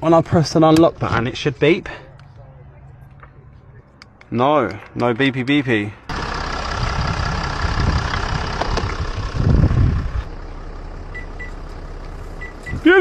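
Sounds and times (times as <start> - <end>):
vehicle engine running: 6.0 - 13.0.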